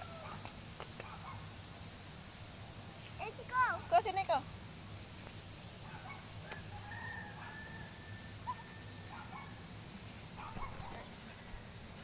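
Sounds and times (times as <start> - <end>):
distant long bird call: 5.8 - 12.0.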